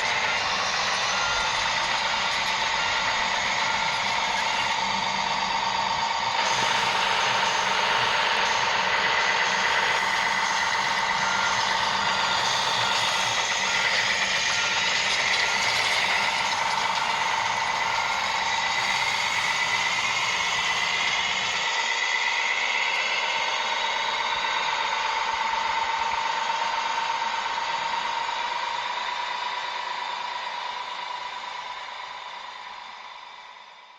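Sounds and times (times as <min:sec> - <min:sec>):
high whine sliding in pitch: 0:00.0 - 0:25.4
small electric motors whining: 0:00.0 - 0:33.6.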